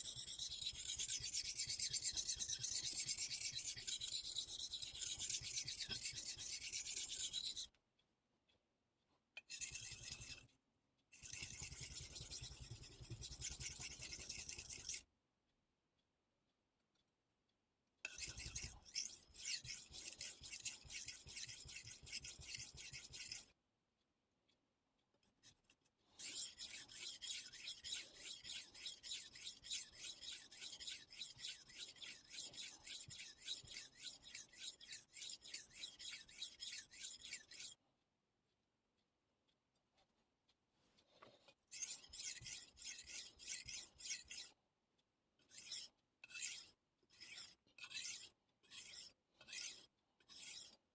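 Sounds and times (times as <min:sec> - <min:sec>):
knife sharpening on whetstone: 0:00.0 - 0:07.7, 0:09.5 - 0:10.4, 0:11.2 - 0:15.0, 0:18.1 - 0:23.6, 0:26.2 - 0:37.8, 0:41.7 - 0:44.6, 0:45.4 - 0:50.8.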